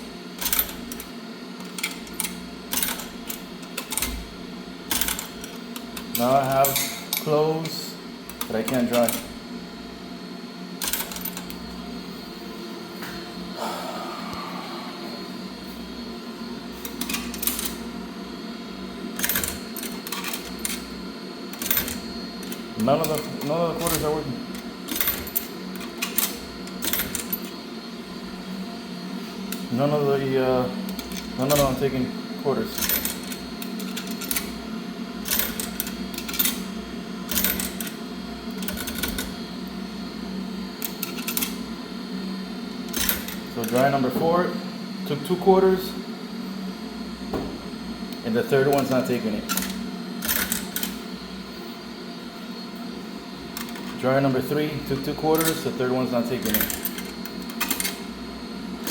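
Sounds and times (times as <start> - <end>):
machine hum: 0.0 - 58.9
coins clicking in slot: 0.4 - 4.3, 4.9 - 9.3, 10.8 - 11.6, 16.8 - 17.8, 19.2 - 20.9, 21.5 - 27.6, 30.9 - 31.9, 32.7 - 34.6, 35.2 - 36.7, 37.3 - 39.4, 40.8 - 41.6, 42.9 - 44.0, 48.7 - 51.0, 53.6 - 54.0, 55.0 - 58.0.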